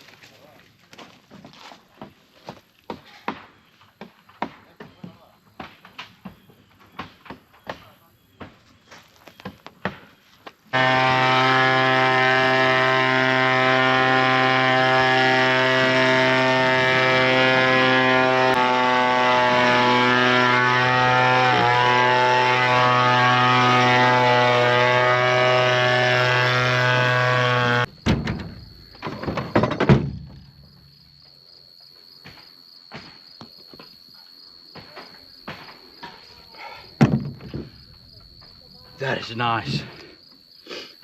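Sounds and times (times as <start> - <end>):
blower engine running: 10.8 - 27.9
crickets chirring: 27.9 - 41.0.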